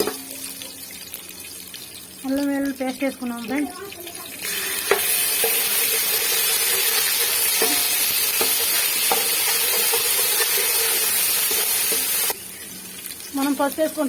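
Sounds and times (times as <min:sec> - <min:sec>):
paste sizzling in hot oil: 0:00.0 - 0:14.0
spoon knocking against pot: 0:04.8 - 0:12.3.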